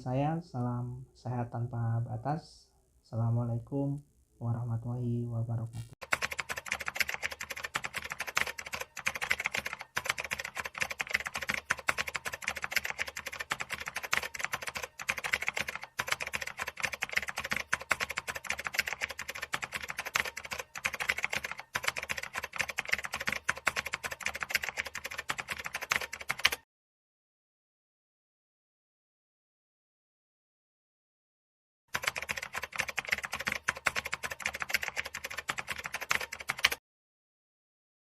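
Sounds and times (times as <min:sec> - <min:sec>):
rapid clicking: 0:06.0 - 0:26.6, 0:32.0 - 0:36.8.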